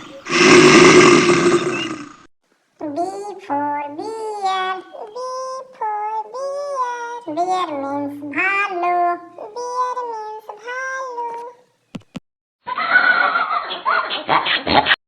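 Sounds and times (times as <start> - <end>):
child singing in high voice: 2.8 - 11.6.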